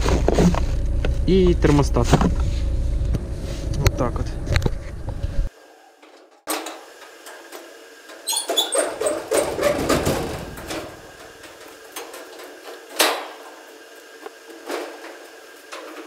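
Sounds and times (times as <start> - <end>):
rustling packaging and clattering parts: 0.0 - 2.7, 8.8 - 16.0.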